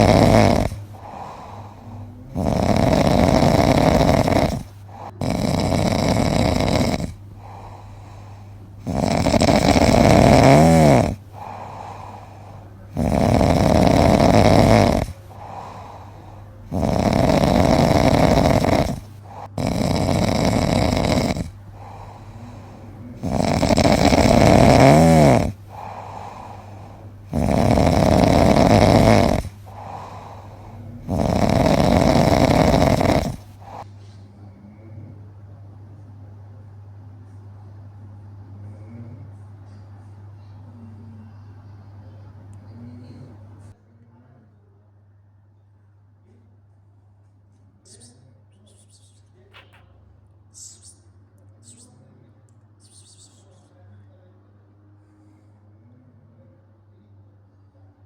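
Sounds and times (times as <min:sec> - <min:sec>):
whistling snore: 0:00.0 - 0:12.2, 0:13.0 - 0:33.9, 0:52.8 - 0:53.7
cat snoring: 0:00.0 - 0:33.9, 0:38.6 - 0:39.4, 0:42.7 - 0:43.8
cat breathing: 0:00.0 - 0:34.7.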